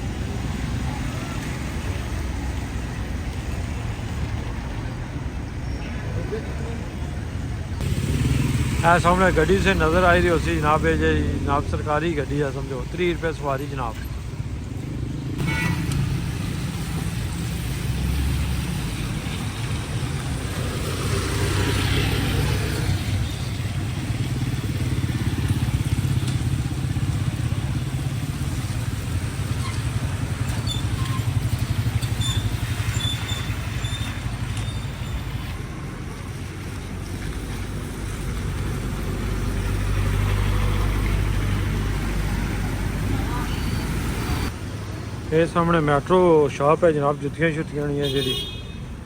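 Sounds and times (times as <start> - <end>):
motorcycle rumble: 0.0 - 45.5
vehicle engines running: 0.0 - 49.0.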